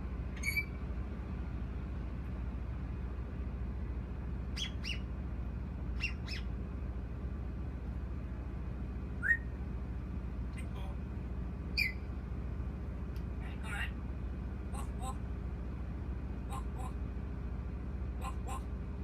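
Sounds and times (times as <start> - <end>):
steady low hum: 0.0 - 19.0
bird chirping: 0.4 - 0.8, 4.5 - 5.1, 5.9 - 6.5, 11.8 - 12.0.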